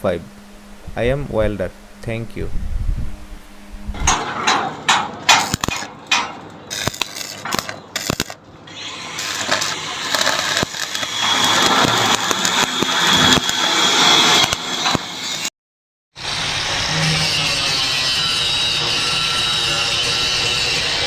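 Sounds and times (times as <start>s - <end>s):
thin high whine: 0.0s - 4.4s, 16.2s - 21.0s
welding arc crackling hiss: 5.0s - 5.9s, 6.7s - 15.5s.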